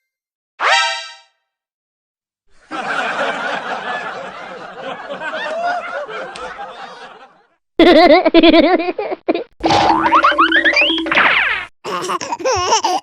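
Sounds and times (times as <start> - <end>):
crowd laughing: 2.5 - 9.2.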